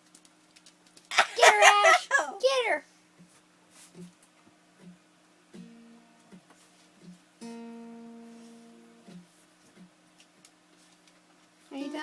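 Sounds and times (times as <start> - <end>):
plucked guitar notes: 7.4 - 9.2.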